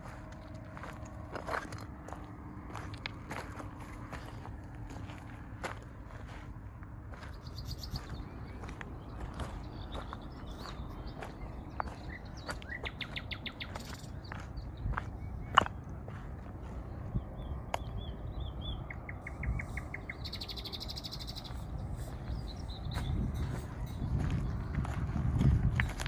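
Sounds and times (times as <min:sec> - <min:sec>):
footsteps crunching on forest trail: 0:07.2 - 0:26.0
songbirds calling and singing: 0:07.2 - 0:26.0
high buzzy bird trill: 0:07.4 - 0:16.5, 0:17.2 - 0:25.0
rapid bird trill: 0:07.4 - 0:24.9.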